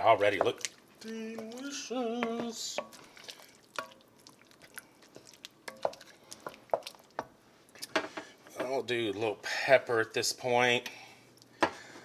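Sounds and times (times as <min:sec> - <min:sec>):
spoon stirring wet soup: 0:00.0 - 0:08.8
spoon knocking pot: 0:01.4 - 0:03.0, 0:05.6 - 0:07.3.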